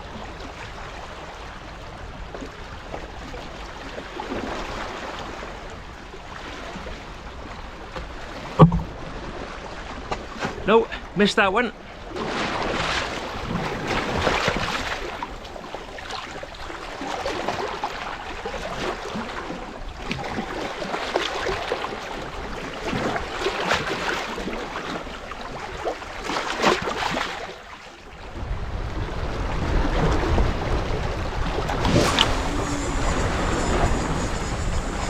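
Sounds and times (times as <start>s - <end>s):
sea washing at shore: 0.0s - 35.0s
knocks and rustles: 8.6s - 9.0s
wind on microphone: 28.2s - 35.0s.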